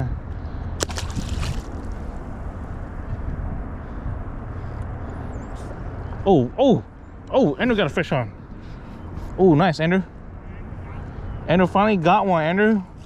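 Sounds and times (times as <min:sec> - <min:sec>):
wind noise on microphone: 0:00.0 - 0:04.7.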